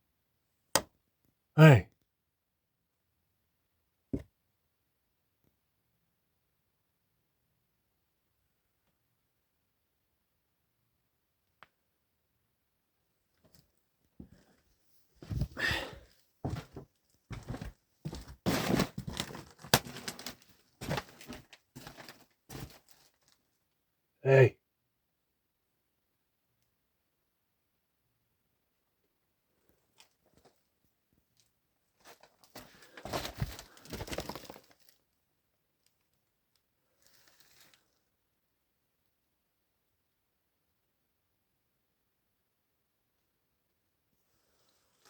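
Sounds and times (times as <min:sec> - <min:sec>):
rustling and scratching: 0:16.5 - 0:23.4, 0:32.0 - 0:35.0, 0:37.0 - 0:38.0.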